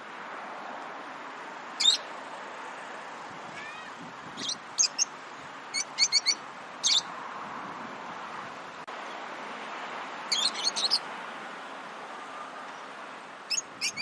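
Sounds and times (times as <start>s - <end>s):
lovebirds chirping: 1.8s - 2.1s, 4.3s - 7.1s, 10.3s - 11.1s, 13.5s - 14.0s.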